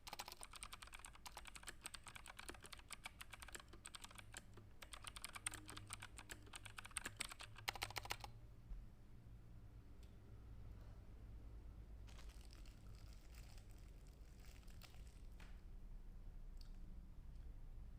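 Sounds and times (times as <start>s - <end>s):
fast typing on keyboard: 0.0s - 8.3s
faint low hum: 0.0s - 17.9s.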